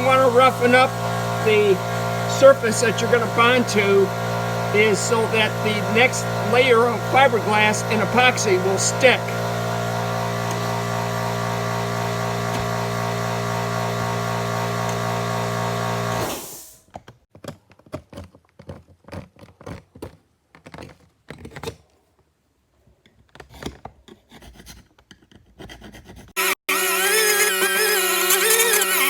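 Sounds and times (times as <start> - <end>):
hand scraping hard epoxy: 0.0 - 9.6, 23.4 - 29.0
die grinder running: 0.0 - 16.8, 26.4 - 29.0.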